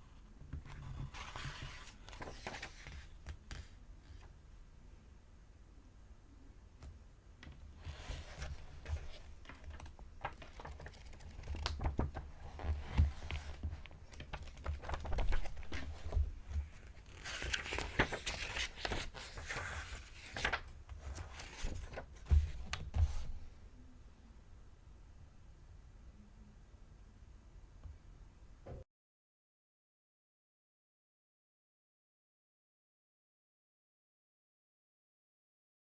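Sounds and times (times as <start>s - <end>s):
paper pages flipping: 0.7s - 4.3s, 7.8s - 23.4s.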